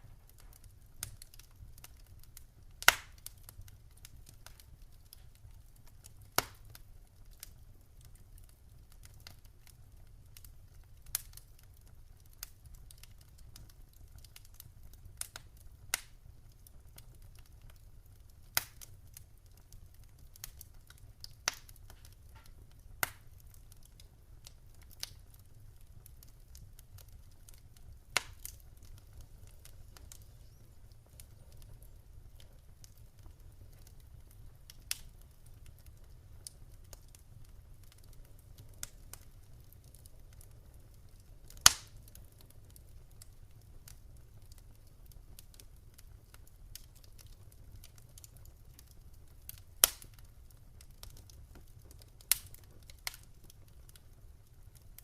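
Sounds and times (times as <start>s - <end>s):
sharp pops of fire: 0.0s - 6.8s, 12.4s - 16.2s, 18.5s - 19.2s, 20.0s - 40.6s, 41.4s - 44.6s, 45.3s - 54.0s
wood fire crackling: 0.0s - 55.0s.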